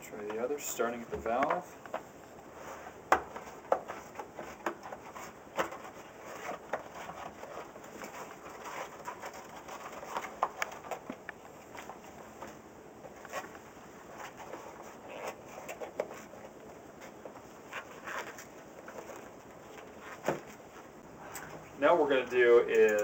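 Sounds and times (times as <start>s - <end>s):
rubber tire bead squeaking: 15.0s - 15.8s.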